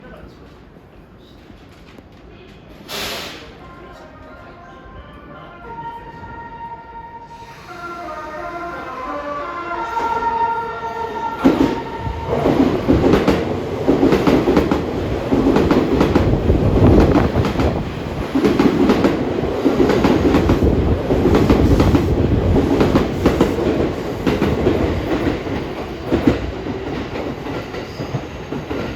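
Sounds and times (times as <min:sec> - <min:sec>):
train horn: 0:04.2 - 0:12.6
train rumble: 0:07.4 - 0:28.9.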